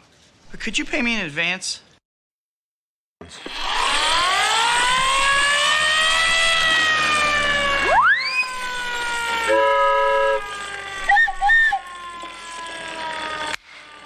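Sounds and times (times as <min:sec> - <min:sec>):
air-raid siren winding down: 0:03.4 - 0:14.0
rising slide whistle: 0:03.5 - 0:13.9
warbling whistle notes: 0:03.9 - 0:12.8
short horn toot: 0:09.5 - 0:10.5.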